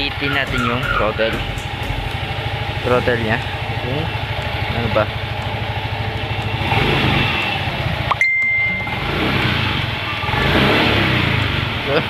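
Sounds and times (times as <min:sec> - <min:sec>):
scooter engine revving: 0:00.0 - 0:12.0
short high beep: 0:07.2 - 0:09.3.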